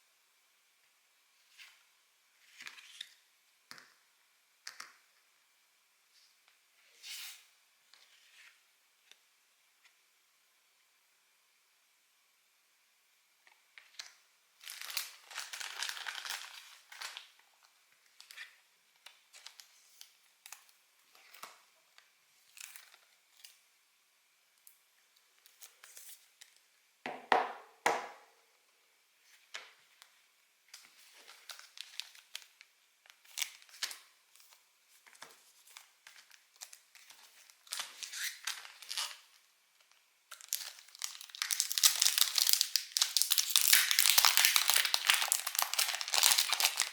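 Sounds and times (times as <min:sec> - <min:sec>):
packaging crinkling and tearing: 0:14.0 - 0:17.3, 0:30.8 - 0:39.4, 0:40.3 - 0:46.9.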